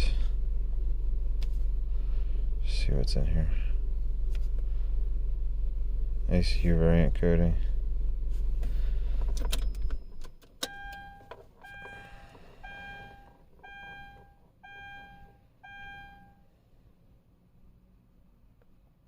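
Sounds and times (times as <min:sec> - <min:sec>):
low rumble: 0:00.0 - 0:10.1
car keys jingling: 0:09.2 - 0:15.4
dashboard warning chime: 0:09.4 - 0:16.4.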